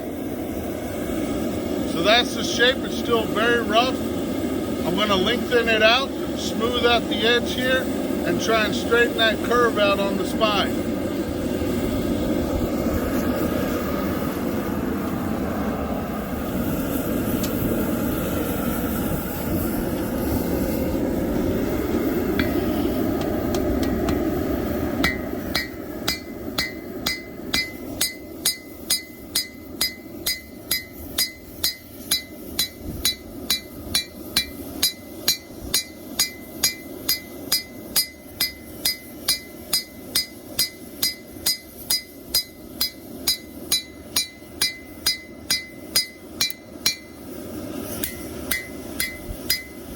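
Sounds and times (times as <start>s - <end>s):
steady rushing noise: 0.0s - 49.9s
hammer striking steel on anvil: 22.4s - 22.6s, 25.0s - 47.2s, 47.9s - 49.9s.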